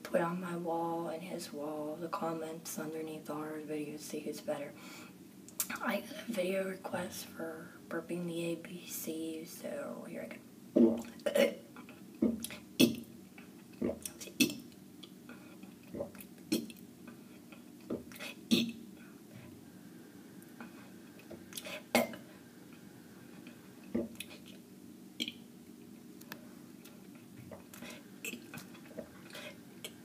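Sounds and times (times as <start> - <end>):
person burping: 10.8 - 11.6, 12.8 - 13.1, 15.9 - 16.8, 18.2 - 18.8, 21.6 - 22.2.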